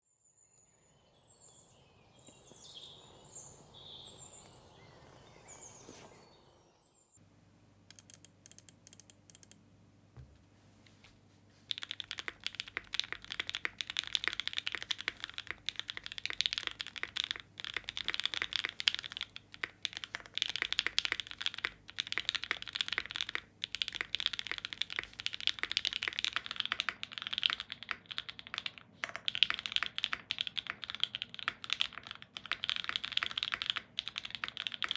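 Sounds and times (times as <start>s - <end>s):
mechanical keyboard typing: 7.9s - 9.6s, 11.7s - 34.9s
scattered key clicks: 7.9s - 9.6s.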